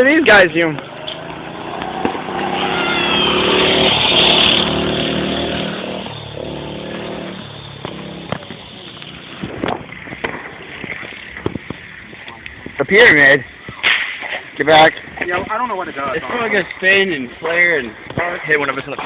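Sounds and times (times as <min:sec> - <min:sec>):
vehicle engine driving past: 0:00.8 - 0:10.8.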